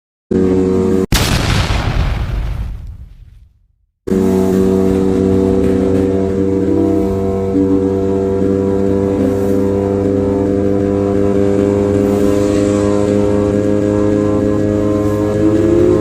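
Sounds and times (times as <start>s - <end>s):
motorcycle engine cruising: 4.1s - 16.0s.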